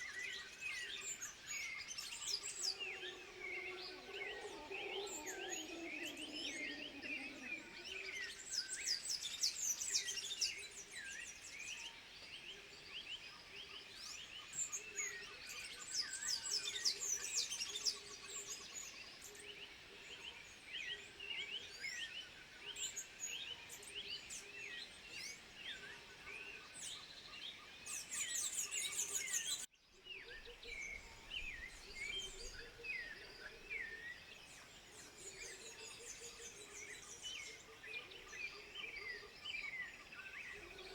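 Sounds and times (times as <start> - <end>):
chorus of high-pitched animal chirps: 1.8 - 9.0.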